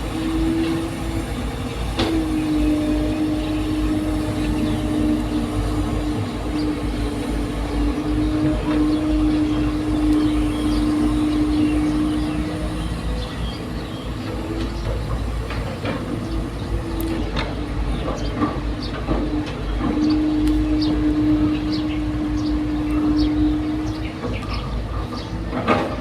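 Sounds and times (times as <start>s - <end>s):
excavator engine hum: 0.0s - 26.0s.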